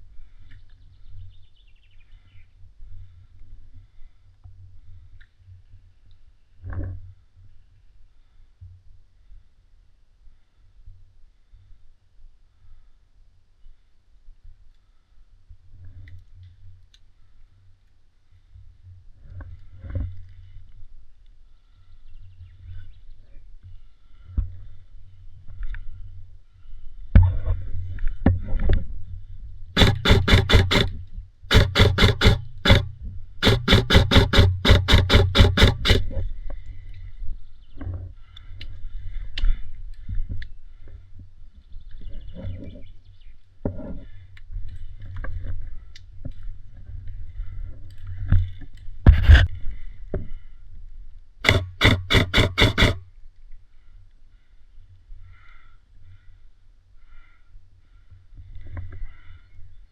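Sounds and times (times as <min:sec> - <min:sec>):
loud knock: 0:29.8 - 0:30.9, 0:31.5 - 0:36.0
airsoft rifle firing bursts: 0:29.8 - 0:36.2, 0:51.4 - 0:53.0.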